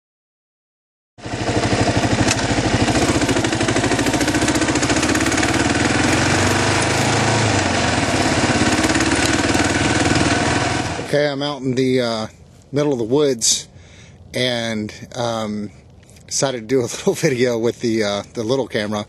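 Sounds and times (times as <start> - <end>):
motorcycle engine thumping: 1.2 - 11.1.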